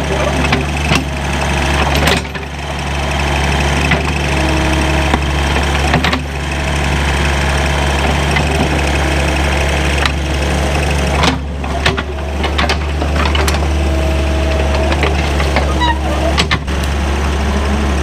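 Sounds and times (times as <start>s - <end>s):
tractor diesel engine running: 0.0s - 18.0s.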